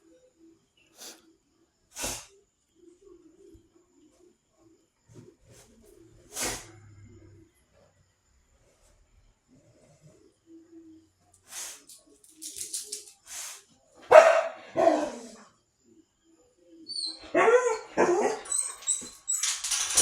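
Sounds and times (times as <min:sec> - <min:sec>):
dog barking: 0:14.0 - 0:15.5, 0:17.2 - 0:18.6.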